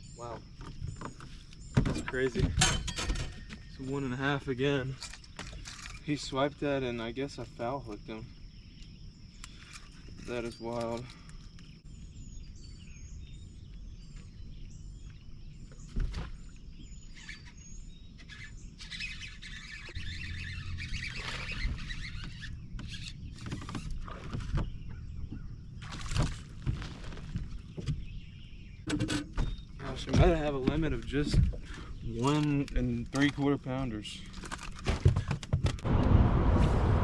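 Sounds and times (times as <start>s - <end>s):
small bird chirping: 3.3s - 25.8s
rushing noise: 35.8s - 37.0s.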